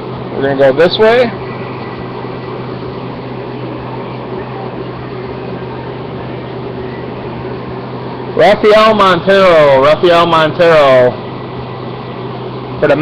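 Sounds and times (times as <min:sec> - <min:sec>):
steady background hum: 0:00.0 - 0:13.0.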